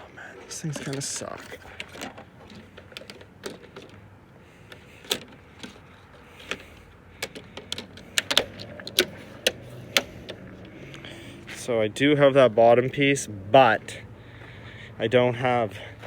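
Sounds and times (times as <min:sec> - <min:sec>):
plastic clips clicking into place: 0:06.4 - 0:11.0.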